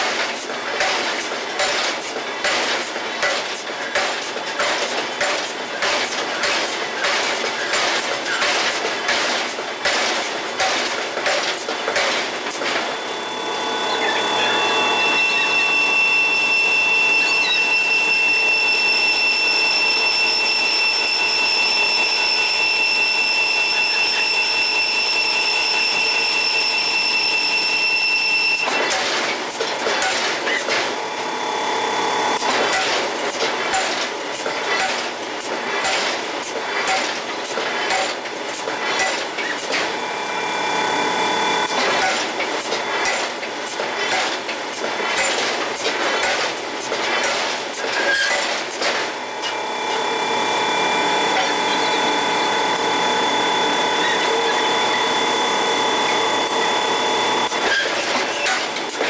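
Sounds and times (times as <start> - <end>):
high-pitched machine whine: 10.0 - 36.2, 36.8 - 59.0.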